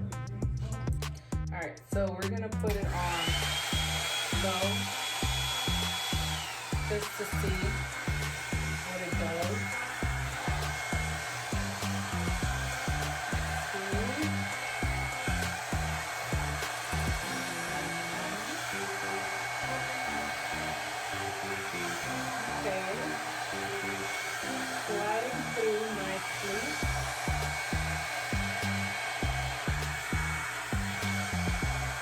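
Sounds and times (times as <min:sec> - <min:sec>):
background music with steady beat: 0:00.0 - 0:32.0
hair dryer brush running: 0:02.7 - 0:32.0.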